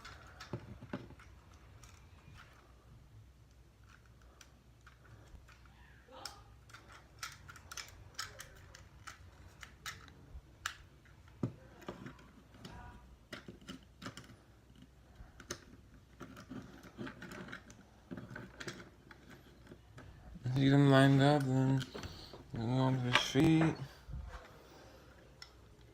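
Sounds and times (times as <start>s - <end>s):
plastic toy parts clicking: 0.0s - 2.8s, 3.4s - 20.2s.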